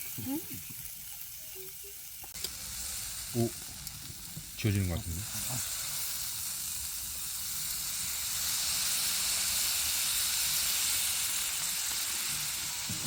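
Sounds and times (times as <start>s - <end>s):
grill pan sizzling: 0.0s - 13.0s.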